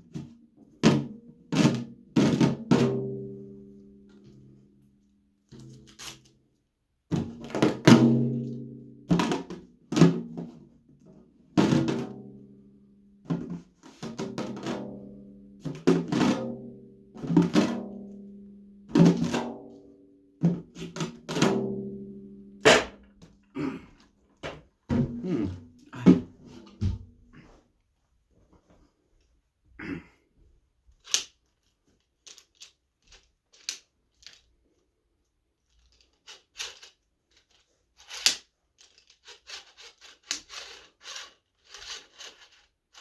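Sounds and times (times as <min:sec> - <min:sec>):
drum-like object struck: 0:22.6 - 0:23.0.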